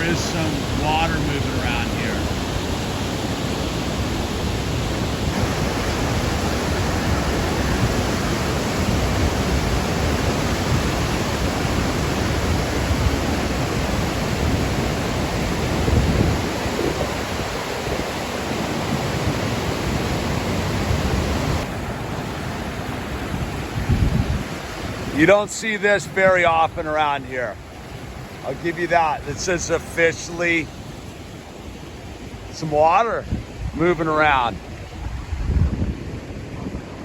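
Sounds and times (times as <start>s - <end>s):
flooded creek rushing water: 0.0s - 37.0s.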